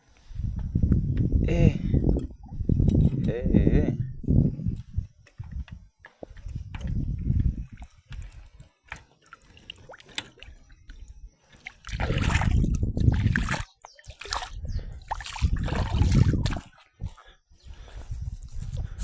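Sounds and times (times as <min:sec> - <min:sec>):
water splashing and sloshing: 0:06.1 - 0:17.9.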